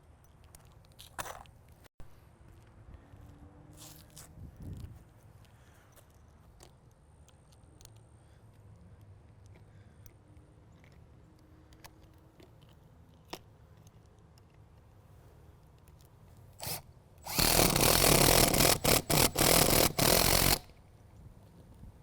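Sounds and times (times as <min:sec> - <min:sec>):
power drill driving screw: 0:16.6 - 0:20.7.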